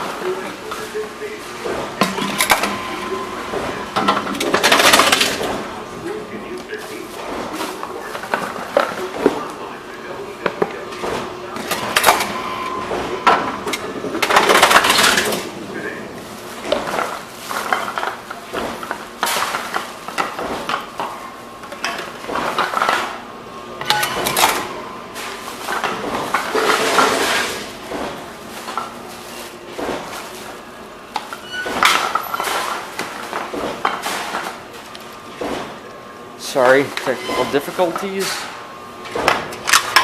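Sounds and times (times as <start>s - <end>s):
bottles and cans clinking: 1.6s - 5.6s, 23.8s - 24.8s, 31.2s - 34.6s
vending machine knocks and rattles: 20.1s - 20.8s, 27.8s - 28.3s, 29.7s - 30.2s, 31.6s - 34.4s, 35.3s - 35.8s, 39.1s - 40.0s.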